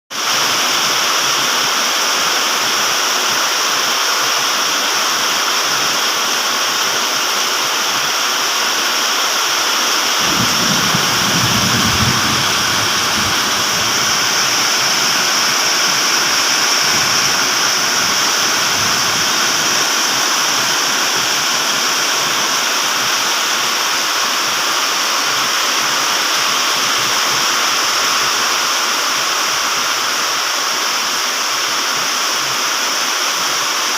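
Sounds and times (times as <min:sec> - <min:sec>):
heavy rain pouring: 0:00.2 - 0:33.9
low rumble: 0:10.2 - 0:16.1.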